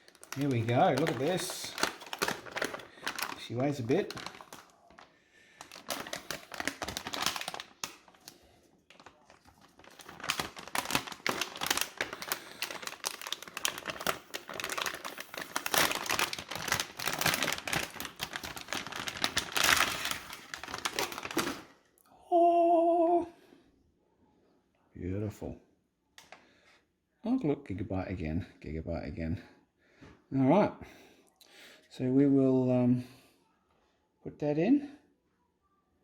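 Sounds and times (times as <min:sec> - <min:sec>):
plastic packaging crinkling: 0:00.0 - 0:21.8.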